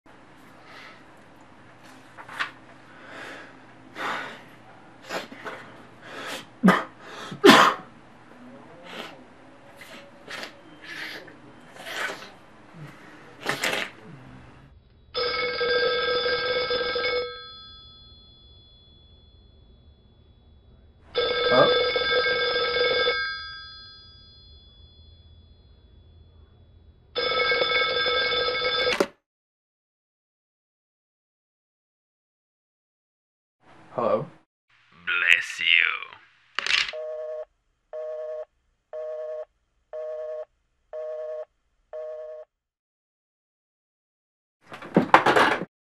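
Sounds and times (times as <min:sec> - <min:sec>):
person sniffing and sneezing: 0:09.8 - 0:14.5
telephone ringing: 0:15.2 - 0:19.6, 0:21.1 - 0:25.7, 0:27.2 - 0:29.1, 0:36.9 - 0:37.4.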